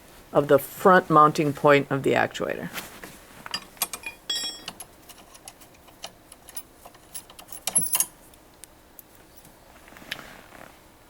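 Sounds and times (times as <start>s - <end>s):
wrench clicking and clinking on bolts: 3.5s - 8.1s
brief metallic ring: 4.1s - 4.7s.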